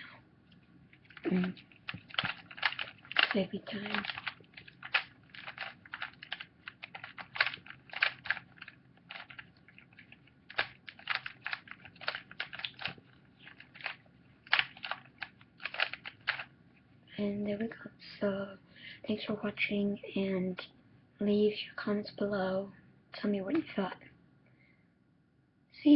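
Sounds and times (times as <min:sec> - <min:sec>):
puzzle cube clicking: 0:01.0 - 0:16.5.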